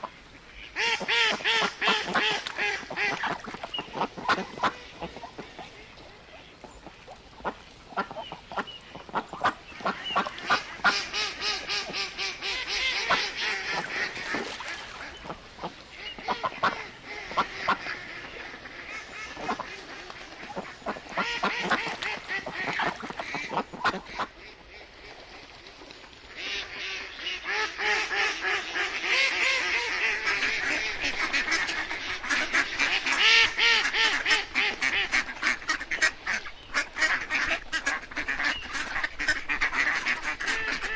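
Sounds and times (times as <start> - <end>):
ducks quacking: 0.0 - 25.2, 26.4 - 40.9.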